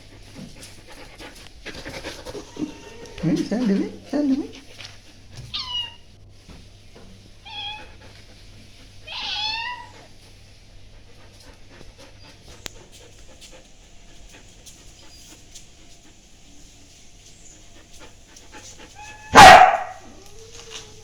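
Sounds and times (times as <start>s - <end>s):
cat meowing: 2.3s - 4.4s, 5.5s - 6.0s, 7.4s - 7.9s, 9.0s - 10.1s.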